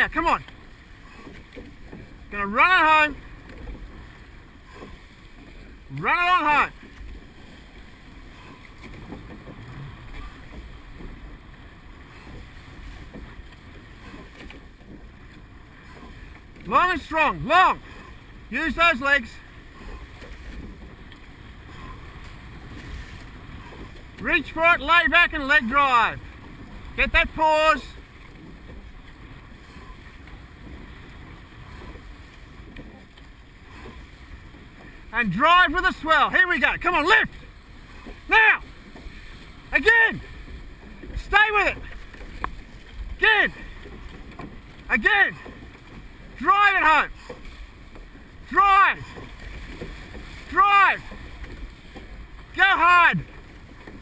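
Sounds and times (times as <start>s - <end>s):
faint splashes: 0.0s - 54.0s
water rushing past boat hull: 0.0s - 54.0s.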